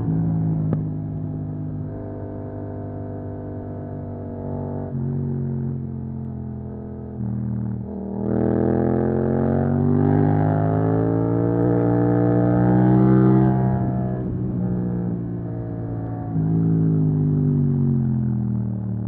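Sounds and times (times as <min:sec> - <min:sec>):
motorcycle engine accelerating: 0:00.0 - 0:19.0.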